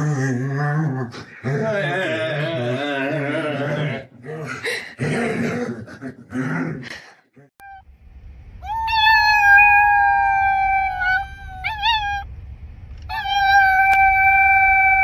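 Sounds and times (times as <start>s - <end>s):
dog howling: 8.6s - 12.3s, 13.1s - 15.0s.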